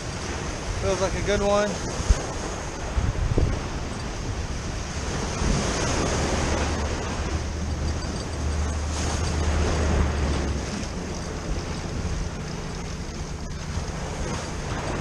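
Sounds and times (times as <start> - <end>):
ocean surf washing on beach: 0.0 - 15.0
wind rumbling on microphone: 0.0 - 15.0.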